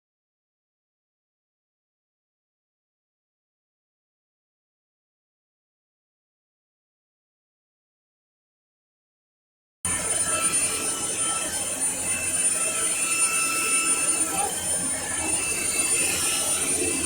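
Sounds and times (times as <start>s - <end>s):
stick vacuum running: 9.9s - 17.0s.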